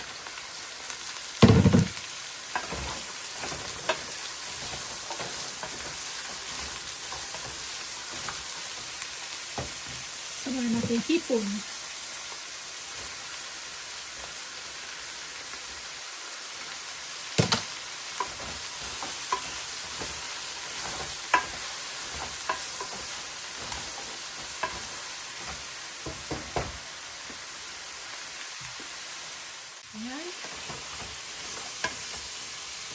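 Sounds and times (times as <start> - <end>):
shrimp sizzling in a pan: 0.0 - 32.9
utensil clacking against pan: 17.4 - 26.8.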